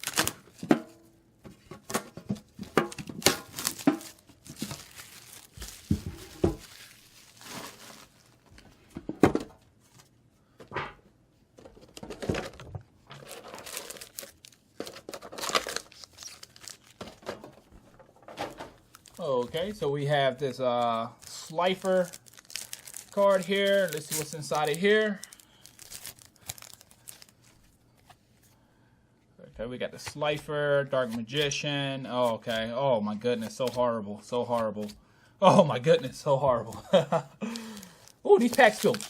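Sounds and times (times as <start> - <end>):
packaging crinkling and tearing: 0.0 - 0.6, 2.4 - 8.6, 12.0 - 17.3, 18.8 - 28.3, 35.9 - 39.0.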